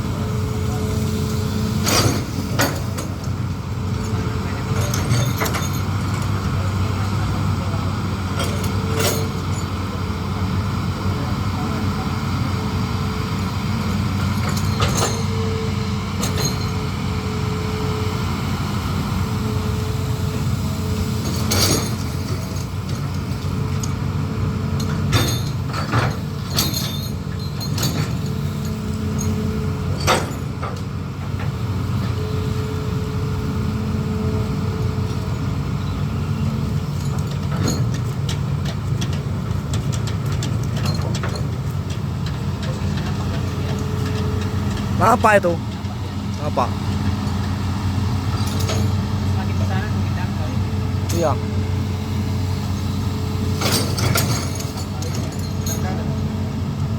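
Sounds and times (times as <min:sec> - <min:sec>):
excavator diesel engine running: 0:00.0 - 0:56.9
sharp clanks and knocks: 0:01.8 - 0:03.4, 0:04.0 - 0:06.4, 0:08.4 - 0:09.7, 0:14.2 - 0:15.4, 0:24.8 - 0:31.5, 0:36.9 - 0:46.0, 0:48.3 - 0:49.1, 0:53.5 - 0:56.2.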